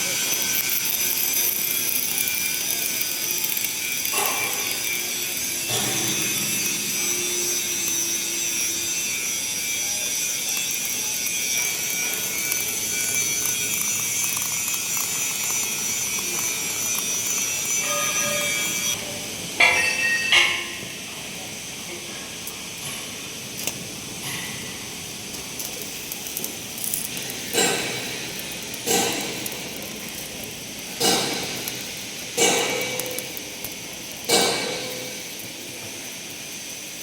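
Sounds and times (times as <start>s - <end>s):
welding arc crackling: 0.0s - 37.0s.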